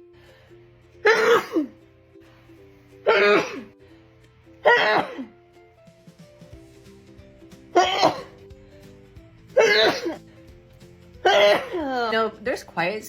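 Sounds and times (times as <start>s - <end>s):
background music: 0.0s - 13.0s
woman sneezing loudly: 1.0s - 1.7s, 3.0s - 3.7s, 4.6s - 5.3s, 7.8s - 8.3s, 9.6s - 10.2s, 11.2s - 12.0s.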